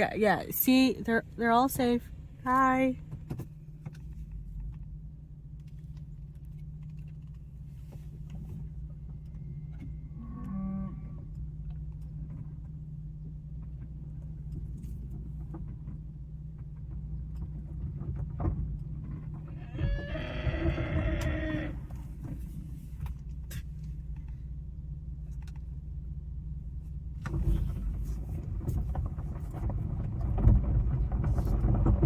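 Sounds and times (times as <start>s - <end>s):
car hum from inside cabin: 0.0s - 32.0s
cow mooing: 10.0s - 11.3s, 19.6s - 21.8s.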